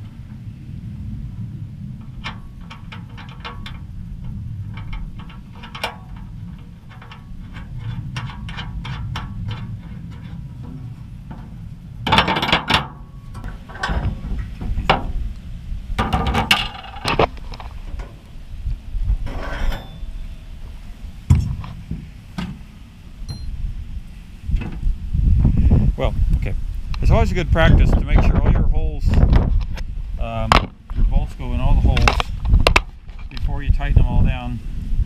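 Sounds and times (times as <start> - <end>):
steady low hum: 0.0 - 35.0
metal parts clattering: 12.1 - 14.2.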